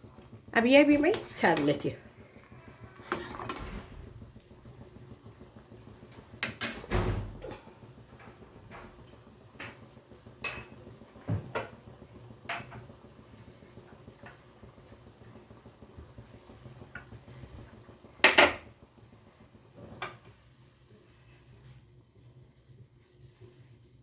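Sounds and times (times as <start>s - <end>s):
kitchen utensils knocking and clinking: 10.4s - 11.8s.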